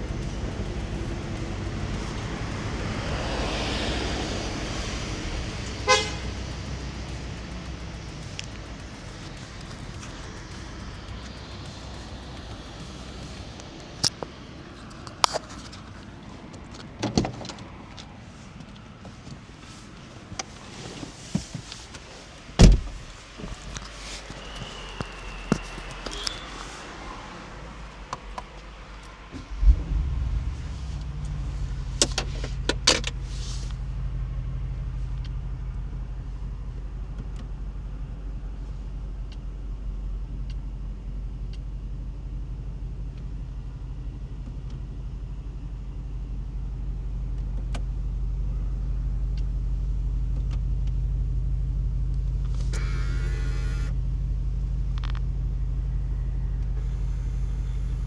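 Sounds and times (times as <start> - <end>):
sharp clicks: 0.0 - 16.2, 22.6 - 26.7
car engine starting and idling: 0.0 - 58.0.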